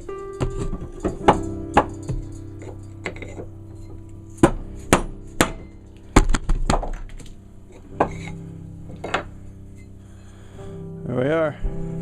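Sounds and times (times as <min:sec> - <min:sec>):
hammer striking wood block: 0:04.4 - 0:07.0.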